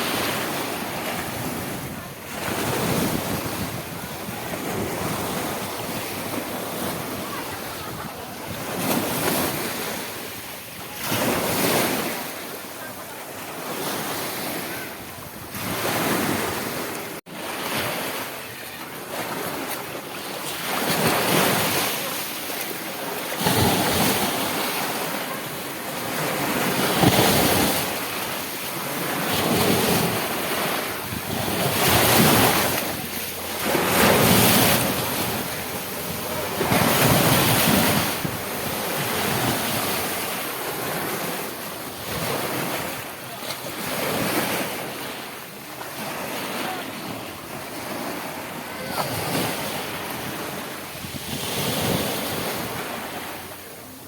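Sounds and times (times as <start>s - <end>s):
rushing water surging like waves: 0.0s - 54.0s.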